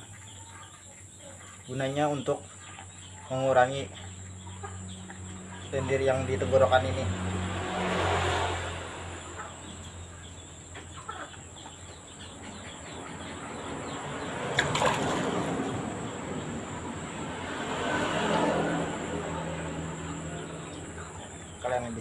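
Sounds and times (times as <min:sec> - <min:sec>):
chicken clucking: 0:00.0 - 0:06.3, 0:10.6 - 0:15.7.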